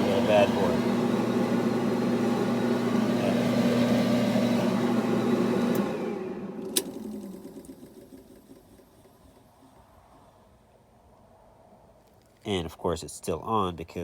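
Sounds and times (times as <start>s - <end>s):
clothes dryer humming: 0.0s - 9.2s.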